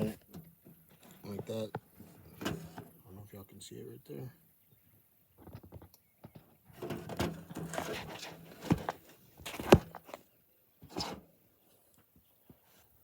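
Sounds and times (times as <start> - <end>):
rustling and rubbing: 0.0 - 3.0, 6.7 - 13.0.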